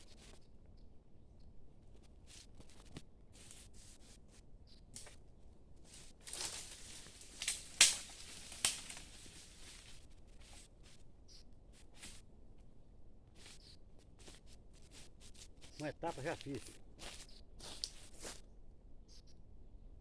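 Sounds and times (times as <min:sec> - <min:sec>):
sharp snaps: 0:07.4 - 0:09.0.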